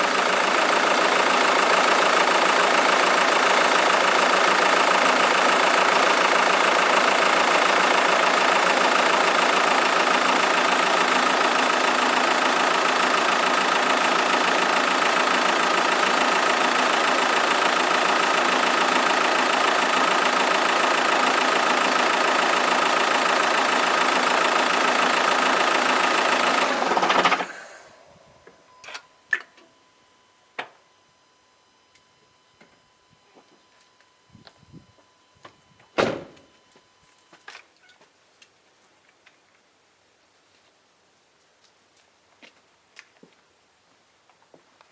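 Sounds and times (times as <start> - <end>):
diesel engine idling: 0.0 - 28.8
engine shuddering to a stop: 0.0 - 28.9.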